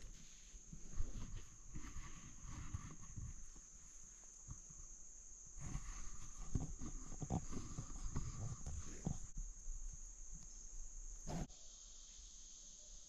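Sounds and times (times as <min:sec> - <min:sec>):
low thumps and rustling: 0:05.6 - 0:10.4
high-pitched insect drone: 0:08.8 - 0:13.0.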